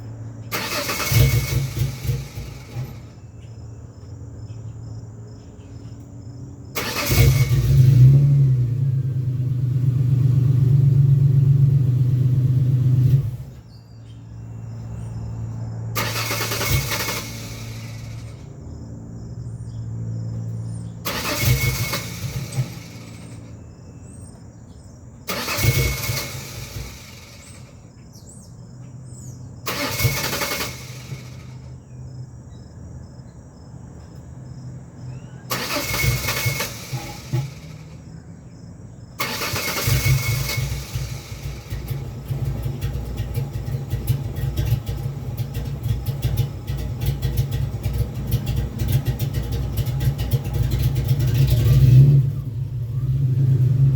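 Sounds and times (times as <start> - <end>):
engine running: 0.0 - 4.1, 5.8 - 32.2, 33.9 - 38.3, 39.1 - 53.9
starter motor cranking: 0.5 - 3.0, 6.8 - 7.9, 21.1 - 23.4, 25.3 - 27.6, 29.7 - 31.5, 35.5 - 37.9, 39.2 - 42.9.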